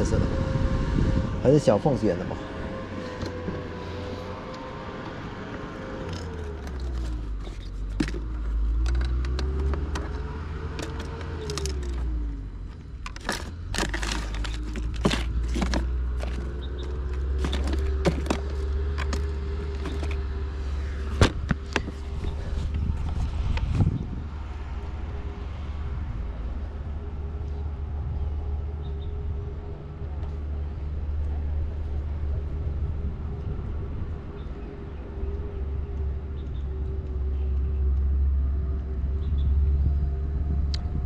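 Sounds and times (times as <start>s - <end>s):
engine running with low rumble: 0.0s - 41.0s
sharp clicks and rattles: 6.0s - 20.4s.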